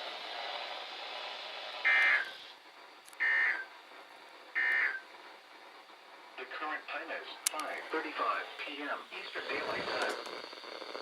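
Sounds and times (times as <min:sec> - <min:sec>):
radio hiss: 0:00.0 - 0:11.0
digital data tone bursts: 0:01.8 - 0:02.4, 0:03.2 - 0:03.7, 0:04.6 - 0:05.1.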